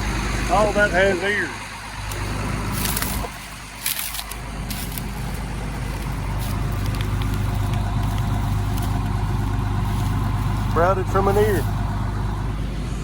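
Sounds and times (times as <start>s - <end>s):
tractor engine running: 0.0s - 13.0s
sharp clicks and crackles: 2.0s - 10.8s.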